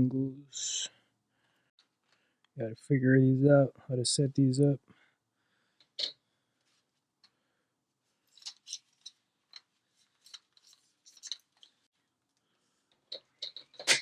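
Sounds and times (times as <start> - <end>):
plastic packaging clicks and rustles: 8.3 - 11.9.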